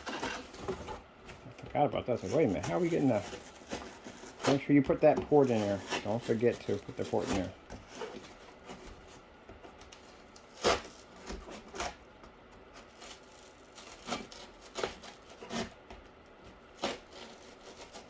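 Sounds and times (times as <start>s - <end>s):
knife cutting cardboard: 0.0s - 9.2s, 9.8s - 12.0s, 12.7s - 16.0s, 16.6s - 18.0s
cardboard scrapes and taps: 0.0s - 12.0s.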